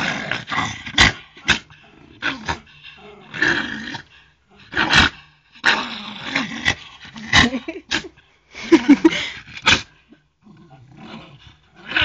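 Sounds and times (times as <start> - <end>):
dog growling: 0.0 - 8.1, 9.1 - 12.0.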